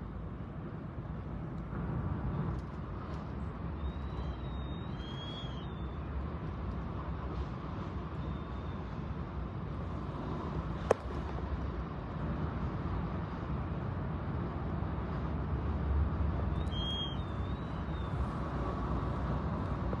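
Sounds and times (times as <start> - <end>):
faint high whistle: 3.8 - 6.1, 16.5 - 18.2.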